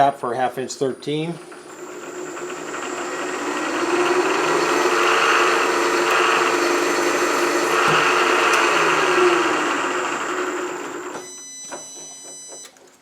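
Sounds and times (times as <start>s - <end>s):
milling machine motor humming: 1.0s - 11.2s.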